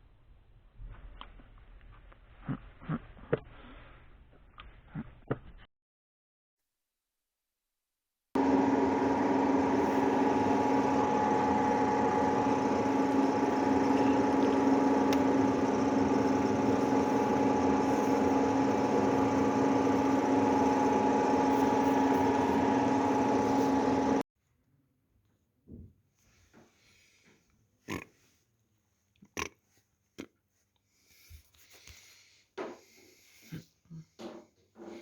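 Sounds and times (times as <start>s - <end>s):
electric motor humming: 8.4s - 24.2s.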